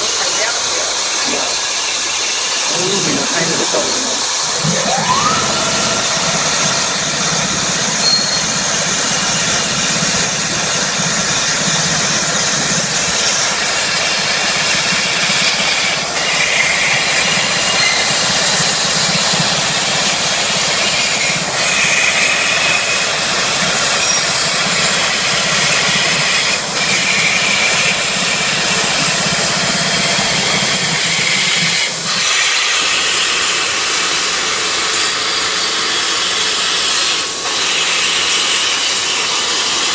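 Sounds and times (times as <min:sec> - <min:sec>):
plasma cutter hissing: 0:00.0 - 0:18.8, 0:31.7 - 0:39.9
low machine hum: 0:02.8 - 0:11.5.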